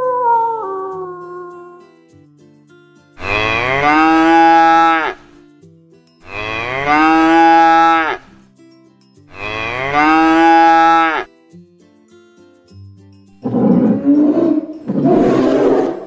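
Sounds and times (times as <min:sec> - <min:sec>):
cow mooing: 0:03.2 - 0:05.2, 0:06.3 - 0:08.2, 0:09.3 - 0:11.3, 0:13.5 - 0:16.0.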